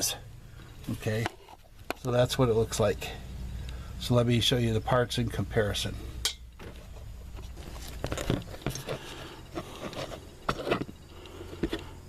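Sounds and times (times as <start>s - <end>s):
low steady hum: 0.0s - 12.0s
small parts clicking and scraping: 6.2s - 12.0s.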